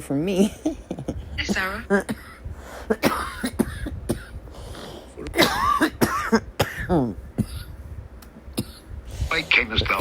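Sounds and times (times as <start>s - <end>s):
woman coughing: 1.9s - 4.4s, 5.3s - 7.6s.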